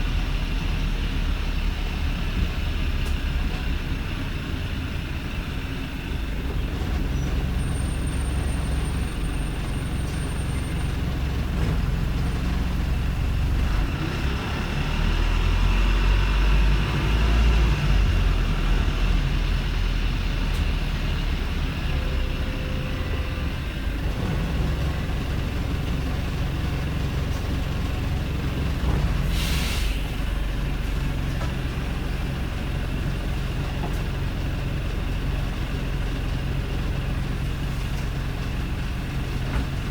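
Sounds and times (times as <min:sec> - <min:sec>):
bus diesel engine running: 0:00.0 - 0:39.9
air brake hiss: 0:29.2 - 0:30.2.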